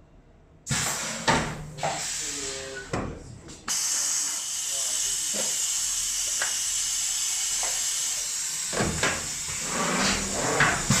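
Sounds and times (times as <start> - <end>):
welding machine hissing: 0.7 - 2.9, 3.7 - 11.0.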